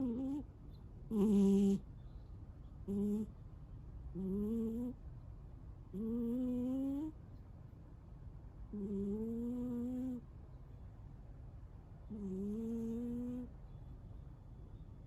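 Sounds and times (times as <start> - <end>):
cat snoring: 0.0 - 0.4, 1.1 - 1.8, 2.9 - 3.3, 4.2 - 5.0, 5.9 - 7.1, 8.7 - 10.2, 12.1 - 13.5.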